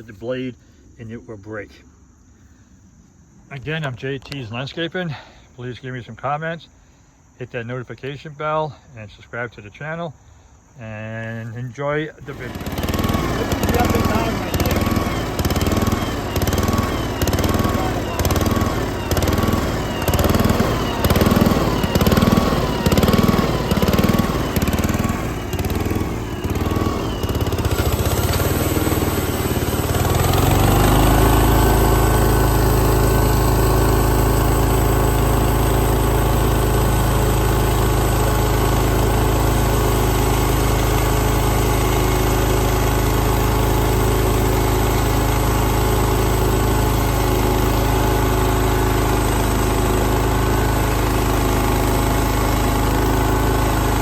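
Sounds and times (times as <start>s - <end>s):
sawmill engine running: 10.8s - 54.0s.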